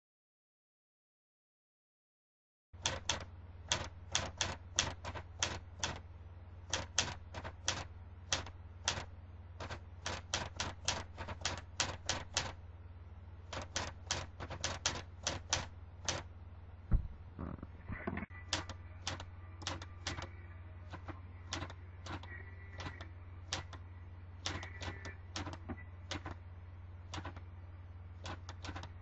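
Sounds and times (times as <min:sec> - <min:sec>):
typewriter keys clacking: 0:02.8 - 0:06.0, 0:06.7 - 0:12.6, 0:13.5 - 0:16.2, 0:18.5 - 0:20.3, 0:24.4 - 0:26.4, 0:27.1 - 0:27.4, 0:28.2 - 0:28.9
steady low hum: 0:02.8 - 0:29.0
low thump: 0:16.9 - 0:17.7.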